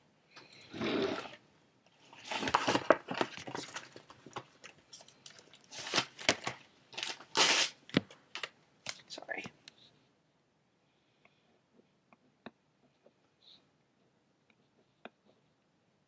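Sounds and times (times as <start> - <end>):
rustling handling noise: 2.0 - 9.1.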